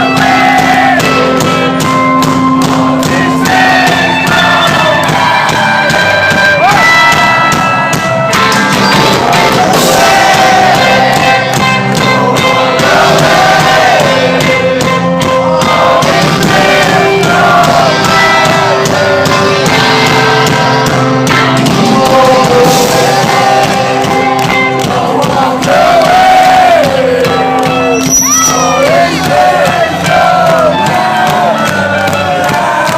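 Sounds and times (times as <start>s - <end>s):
lead vocal singing: 0.0s - 7.5s, 8.8s - 32.9s
crowd voices: 0.0s - 32.9s
live rock band playing: 0.0s - 32.9s.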